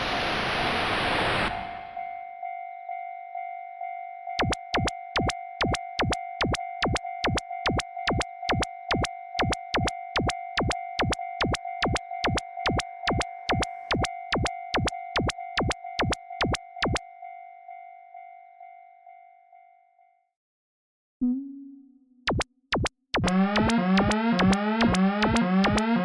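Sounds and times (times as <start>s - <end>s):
railroad crossing bell ringing: 1.7s - 20.2s.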